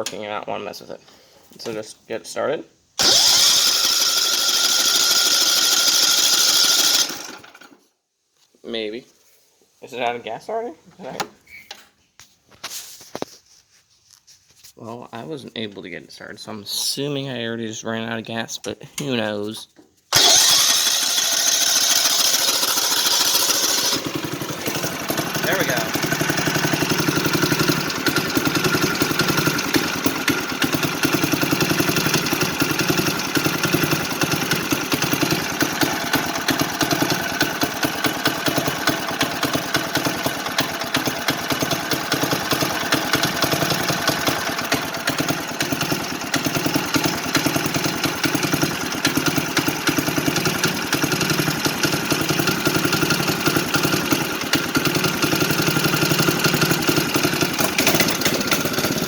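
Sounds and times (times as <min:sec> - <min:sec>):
riding mower engine running: 0:03.0 - 0:07.8, 0:20.1 - 0:59.0.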